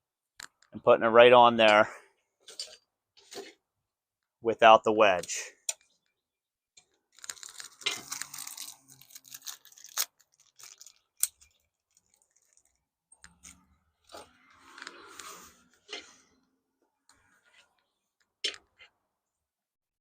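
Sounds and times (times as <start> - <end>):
handling clicks and rustling scrapes: 1.6 - 3.7, 6.8 - 19.0.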